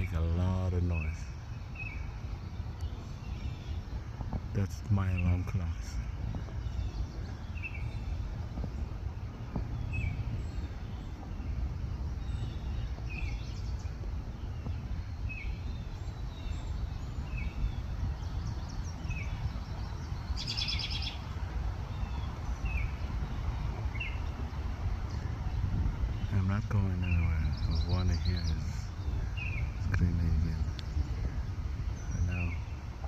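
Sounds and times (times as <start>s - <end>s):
small songbird chirping: 0.0s - 33.0s
bird trilling: 12.1s - 21.3s.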